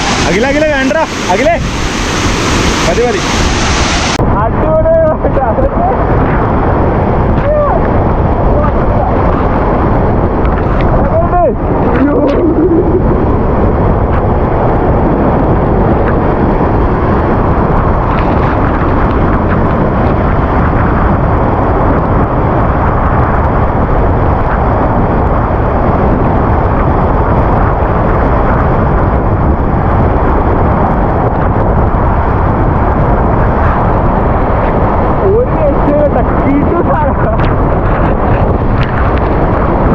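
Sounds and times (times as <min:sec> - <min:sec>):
waterfall rushing: 0:00.0 - 0:04.2.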